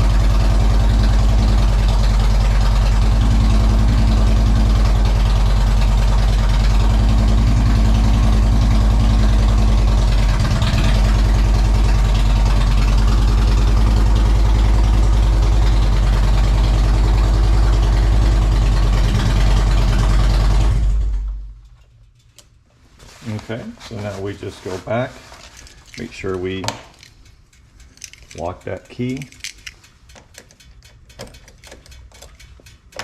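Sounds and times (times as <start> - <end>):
motorcycle engine idling: 0.0 - 21.5.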